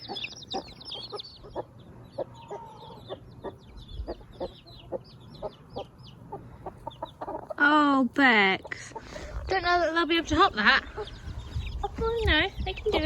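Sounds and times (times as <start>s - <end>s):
hen clucking softly: 0.0s - 7.6s
chicks peeping: 0.0s - 13.0s.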